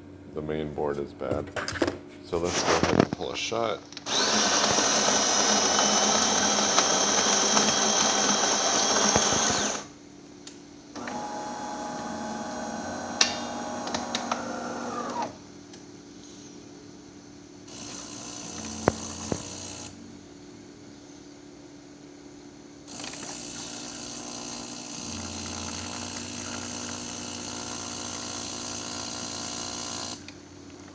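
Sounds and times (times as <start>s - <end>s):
coffee grinder running: 4.0s - 9.9s, 11.0s - 15.3s, 17.7s - 19.9s, 22.9s - 30.3s
motor whir: 4.0s - 9.9s, 11.0s - 15.4s, 17.8s - 19.9s.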